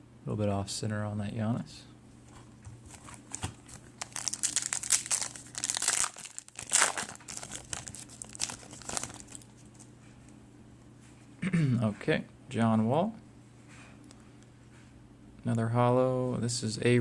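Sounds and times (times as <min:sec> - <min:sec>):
foil wrapper crinkling: 0:02.9 - 0:09.9.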